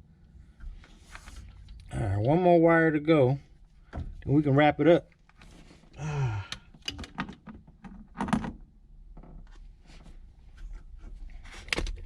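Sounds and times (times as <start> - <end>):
hands handling tools and wires: 5.1 - 8.4, 9.2 - 12.0.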